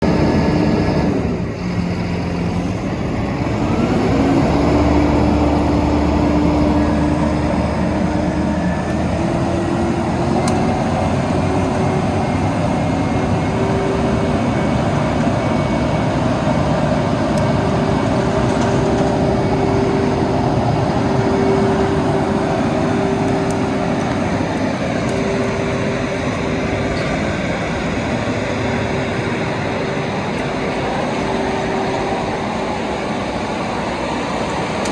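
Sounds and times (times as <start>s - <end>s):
paver diesel engine running: 0.0s - 34.9s.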